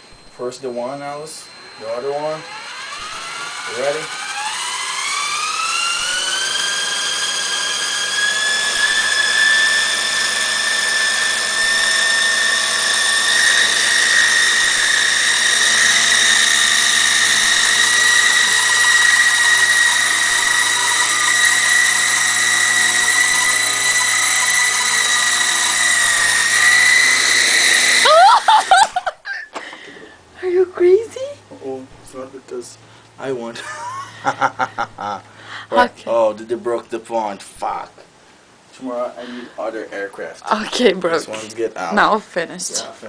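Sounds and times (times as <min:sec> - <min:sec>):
toy helicopter motor whine: 0:00.4 - 0:29.1.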